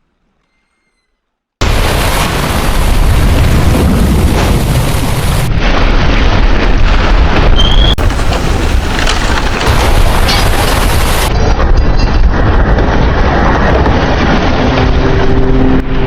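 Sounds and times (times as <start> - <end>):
brief high squeal: 0.4 - 1.2
heavy low rumble: 1.6 - 16.0.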